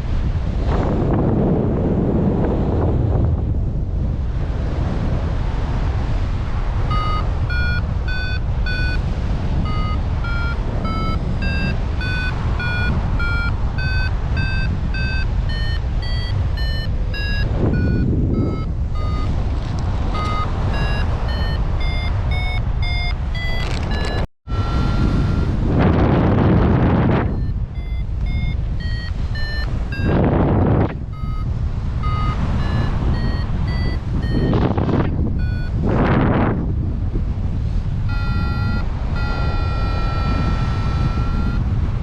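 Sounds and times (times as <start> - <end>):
wind noise on microphone: 0.0 - 42.0
variometer short beeps: 6.8 - 36.3, 38.0 - 41.8.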